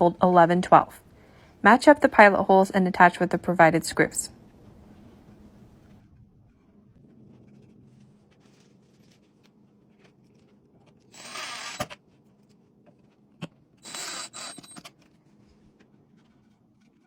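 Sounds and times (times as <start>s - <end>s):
screwdriver grinding screws into wood: 11.1s - 12.0s, 13.8s - 14.9s.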